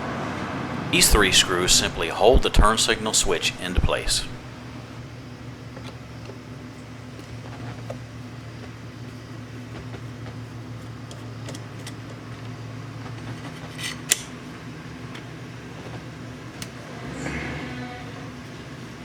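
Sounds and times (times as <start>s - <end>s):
steady low hum: 0.9s - 5.6s.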